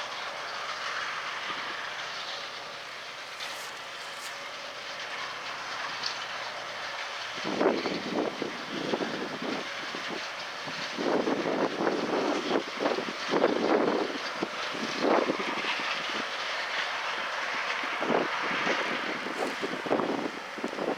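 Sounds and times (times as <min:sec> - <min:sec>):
combine harvester running: 0:00.0 - 0:20.9
wind buffeting microphone: 0:07.3 - 0:20.9.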